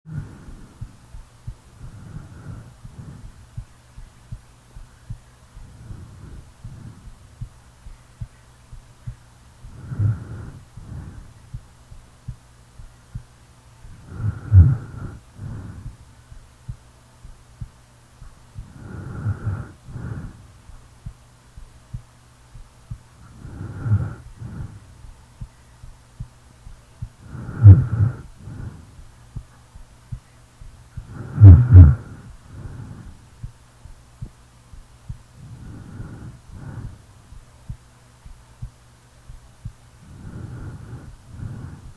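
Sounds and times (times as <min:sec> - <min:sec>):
heartbeat thumps: 0:00.1 - 0:41.9
low steady hum: 0:00.1 - 0:41.9
person snoring: 0:09.8 - 0:11.2, 0:14.0 - 0:15.9, 0:18.8 - 0:20.4, 0:23.2 - 0:24.8, 0:27.3 - 0:28.8, 0:31.1 - 0:33.1.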